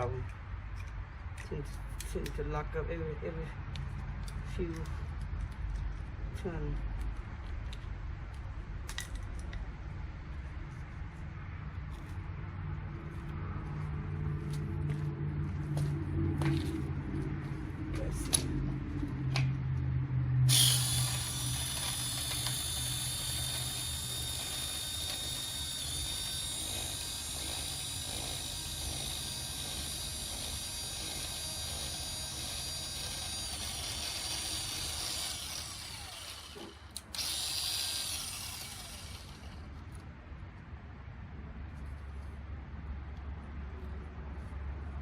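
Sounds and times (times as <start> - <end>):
power drill whining: 20.5 - 39.6
lawnmower engine turning over: 20.5 - 40.0.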